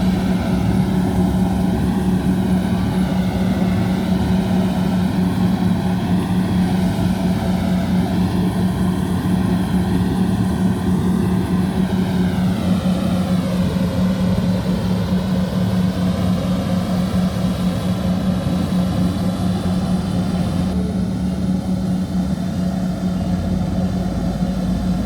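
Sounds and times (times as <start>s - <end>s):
combine harvester engine drone: 0.0s - 25.0s.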